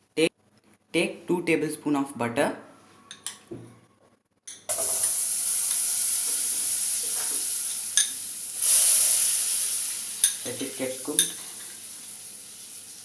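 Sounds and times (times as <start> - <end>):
butter sizzling in a pan: 4.7 - 13.0.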